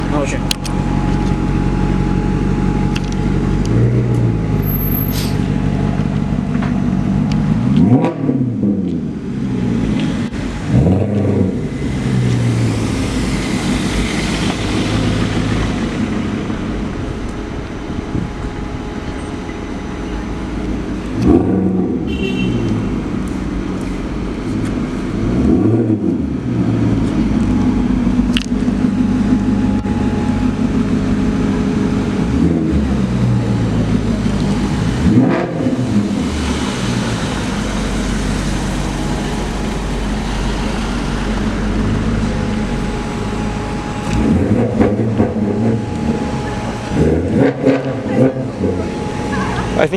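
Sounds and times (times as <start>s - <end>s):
car engine revving: 0.0s - 49.9s.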